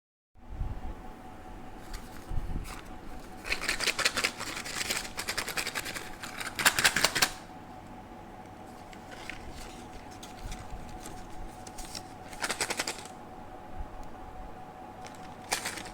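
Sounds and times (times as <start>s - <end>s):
faint steady hum: 0.4s - 15.9s
rapid clicking and crackling: 2.7s - 7.5s, 8.8s - 13.2s, 15.0s - 15.9s.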